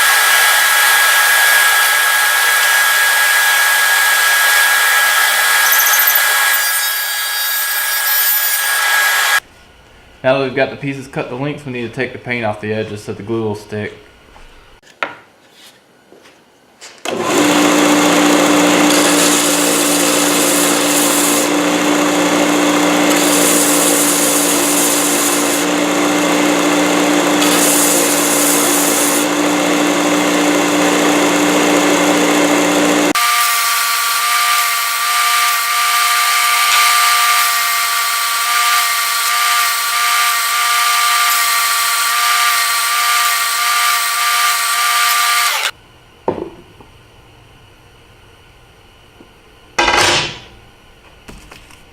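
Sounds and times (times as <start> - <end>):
high-pitched tool whine: 0.0 - 9.4, 18.4 - 45.8
power tool scratching wood: 0.0 - 9.4, 17.2 - 45.8.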